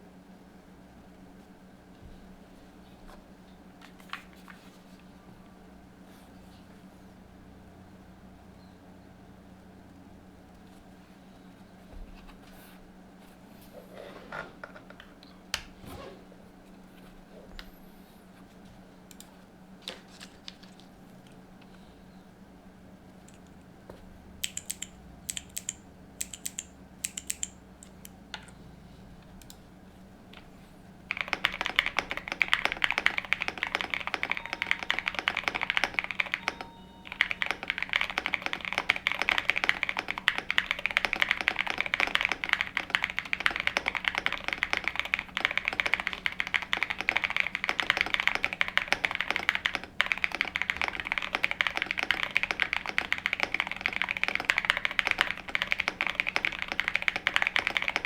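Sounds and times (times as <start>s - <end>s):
typing on mechanical keyboard: 24.4s - 28.0s, 31.1s - 58.0s.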